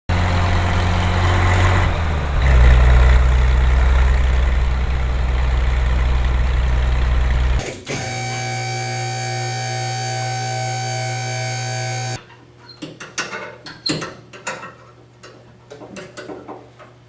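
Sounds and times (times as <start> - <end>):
car engine idling: 0.1 - 7.6.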